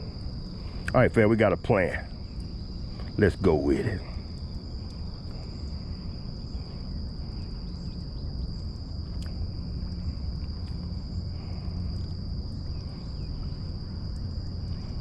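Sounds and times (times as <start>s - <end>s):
insects trilling: 0.0s - 15.0s
low background rumble: 0.0s - 15.0s
faint ticks: 4.0s - 5.5s, 7.4s - 15.0s.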